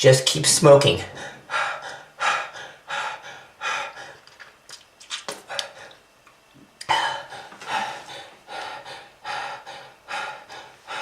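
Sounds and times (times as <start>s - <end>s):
person breathing hard: 1.1s - 4.5s, 5.4s - 6.0s, 6.8s - 11.0s.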